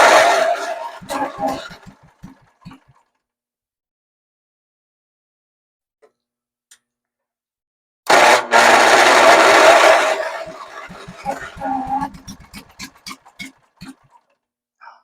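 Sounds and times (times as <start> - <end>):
electric starter cranking engine: 0.0 - 3.0, 8.1 - 14.2.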